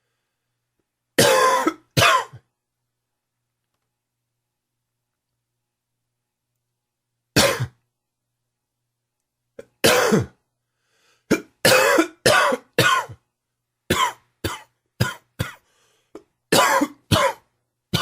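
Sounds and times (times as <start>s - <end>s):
man coughing: 1.2s - 2.5s, 7.4s - 7.8s, 9.6s - 10.4s, 11.3s - 13.2s, 13.9s - 15.6s, 16.2s - 18.0s.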